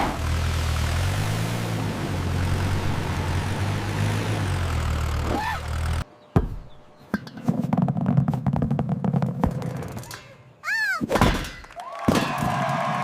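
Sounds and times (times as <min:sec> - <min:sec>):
engine-like drone: 0:00.0 - 0:06.0.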